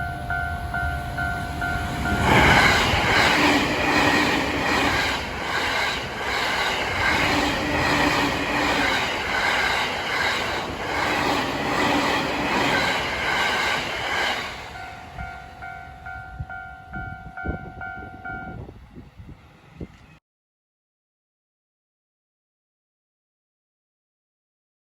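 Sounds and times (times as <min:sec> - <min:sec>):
train wheels clattering on rails: 0:00.0 - 0:15.9
two-tone crossing warning bell: 0:00.0 - 0:18.8.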